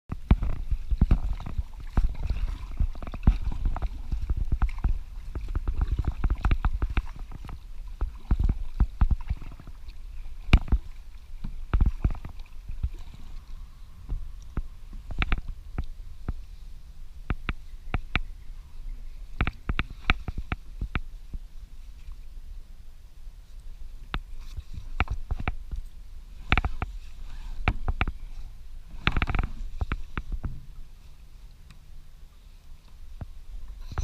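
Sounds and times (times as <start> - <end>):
paddle knocks and clicks: 0.1 - 13.2, 14.1 - 16.5, 17.2 - 18.3, 19.3 - 21.4, 24.1 - 30.8
steady low rumble: 0.1 - 34.0.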